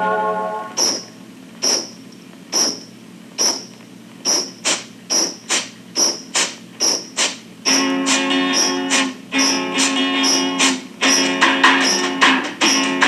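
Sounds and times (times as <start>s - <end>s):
marimba note: 0.0s - 0.9s.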